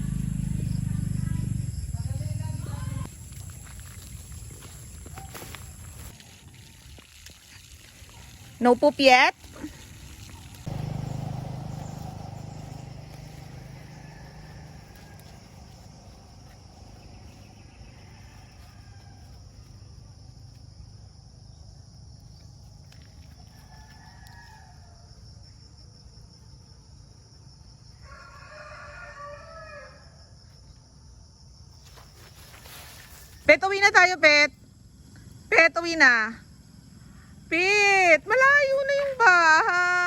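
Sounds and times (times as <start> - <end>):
rooster crowing: 10.6 - 16.1, 17.0 - 19.5, 23.4 - 25.2, 28.0 - 30.3.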